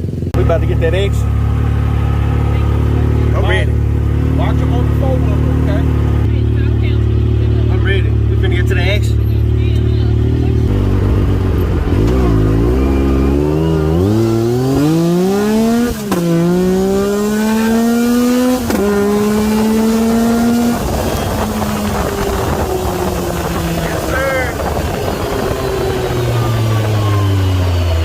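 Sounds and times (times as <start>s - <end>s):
atv engine accelerating: 0.0s - 28.0s.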